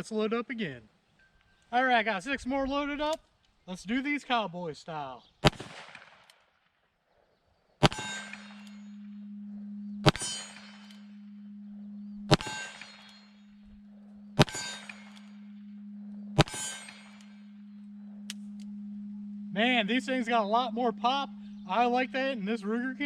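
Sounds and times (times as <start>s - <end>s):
steady low hum: 7.7s - 23.0s
revolver shots: 7.8s - 8.4s
metallic ringing: 7.8s - 23.0s.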